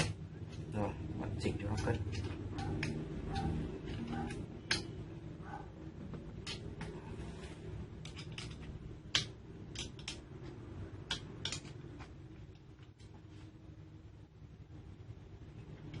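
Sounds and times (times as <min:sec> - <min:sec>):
steady low hum: 0:00.0 - 0:16.0
metal clicks and taps: 0:01.6 - 0:05.0, 0:06.1 - 0:07.0, 0:08.0 - 0:13.1.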